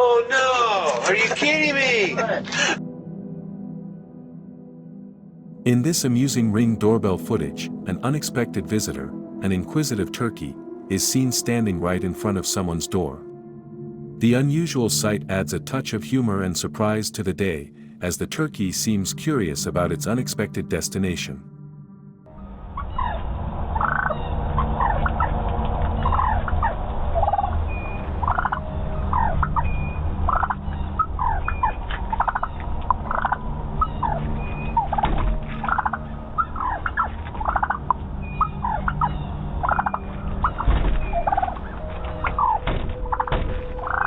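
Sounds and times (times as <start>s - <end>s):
low rumble: 22.3s - 42.3s
turkey gobbling: 22.8s - 44.0s.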